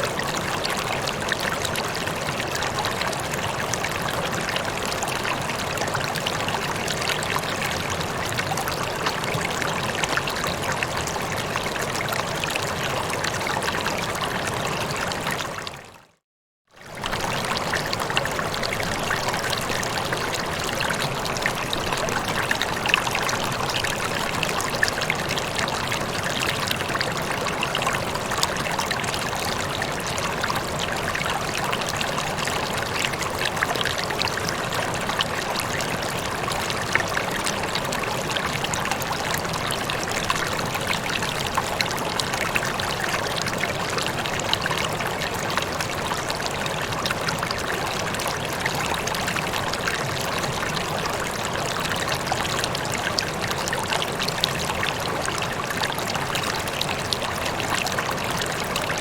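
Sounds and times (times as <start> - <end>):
rippling water running: 16.8 - 59.0.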